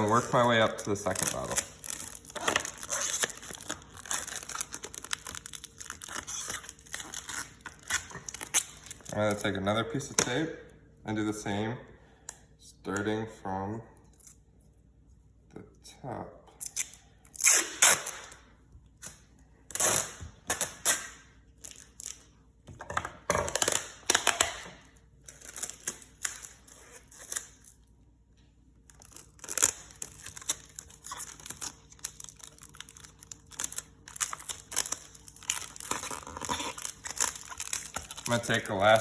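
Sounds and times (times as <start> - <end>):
adhesive tape ripping: 0.0 - 9.4, 16.6 - 18.4, 19.7 - 22.2, 29.0 - 39.0.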